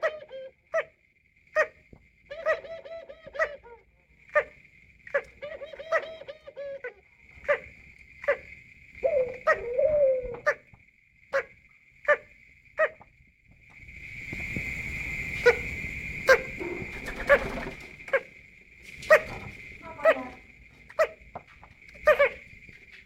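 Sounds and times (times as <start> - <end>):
bird warbling laugh-like call: 2.3 - 3.8, 5.4 - 7.0
bird cough-like calls: 5.1 - 10.6
steady high whine: 7.1 - 23.0.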